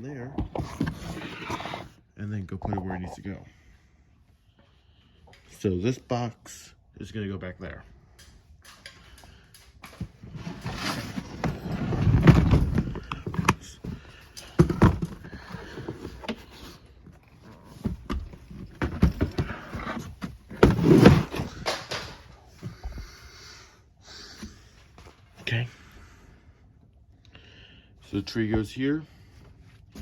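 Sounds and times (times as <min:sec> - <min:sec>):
cardboard box scraping across floor: 0:00.6 - 0:02.0, 0:10.3 - 0:13.2, 0:17.7 - 0:21.6
knocks and thumps: 0:09.9 - 0:23.2.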